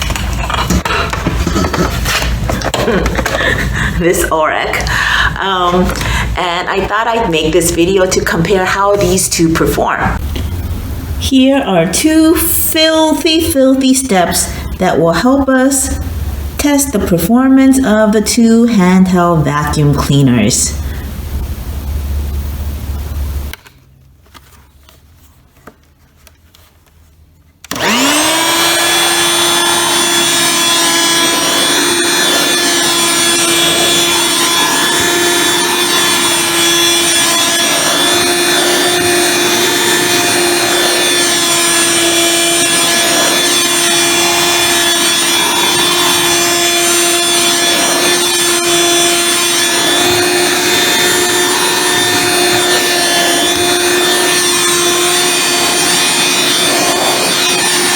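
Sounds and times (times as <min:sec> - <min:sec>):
handheld vacuum motor whine: 0:27.6 - 0:57.9.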